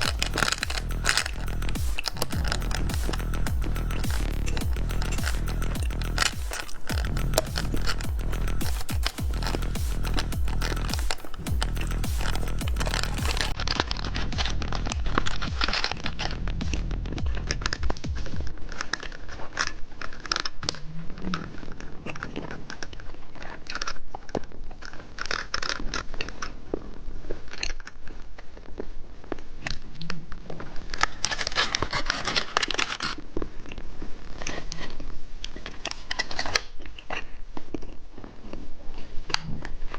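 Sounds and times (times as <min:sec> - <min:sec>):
crunching candy: 0:00.0 - 0:15.5
background music: 0:00.0 - 0:18.3.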